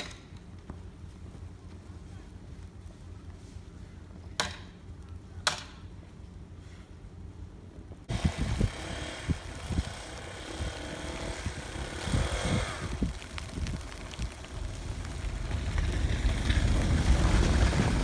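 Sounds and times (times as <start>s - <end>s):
low traffic rumble: 0.0s - 18.0s
even rush of traffic noise: 8.1s - 18.0s.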